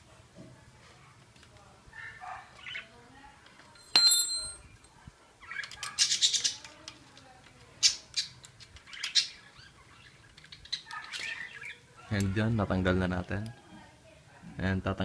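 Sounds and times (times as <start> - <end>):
sharp metallic clink: 3.8 - 4.6.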